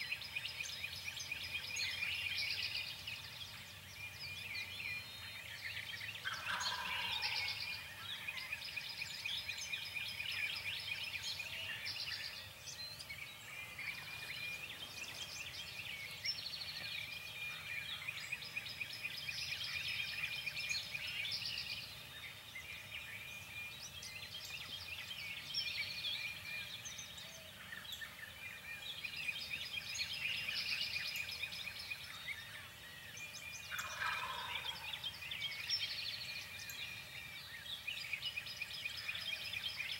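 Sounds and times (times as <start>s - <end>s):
songbirds chirping: 0.0s - 39.9s
wild turkey gobbling: 6.2s - 7.6s, 33.7s - 35.1s.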